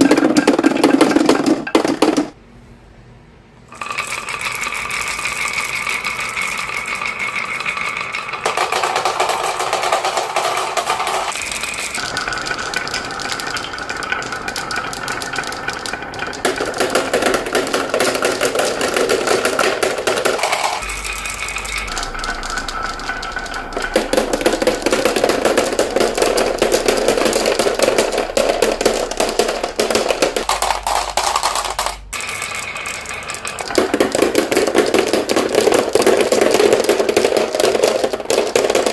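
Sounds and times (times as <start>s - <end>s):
marbles rolling down a track: 0.0s - 2.4s, 3.7s - 38.9s.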